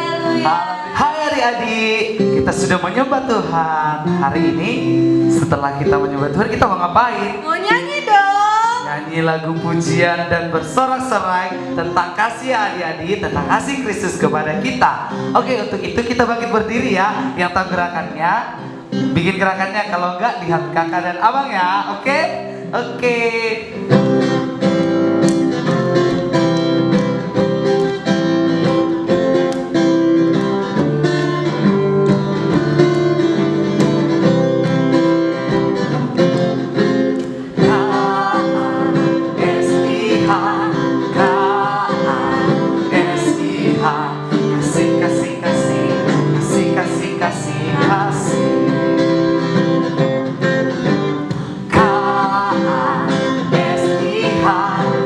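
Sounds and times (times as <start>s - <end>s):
person singing: 0.0s - 10.7s, 37.2s - 49.0s, 51.3s - 55.0s
guitar: 0.0s - 55.0s
upbeat praise song: 0.0s - 55.0s.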